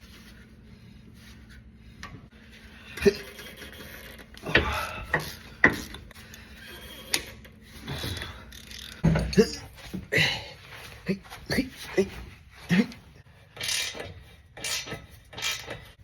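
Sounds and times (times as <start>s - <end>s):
heavy breathing: 4.4s - 13.6s.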